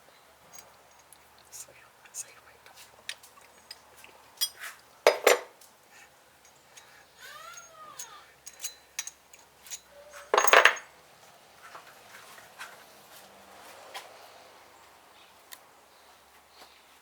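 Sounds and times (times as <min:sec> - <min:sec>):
metal parts clicking and clinking: 0:00.5 - 0:01.1, 0:06.4 - 0:10.9.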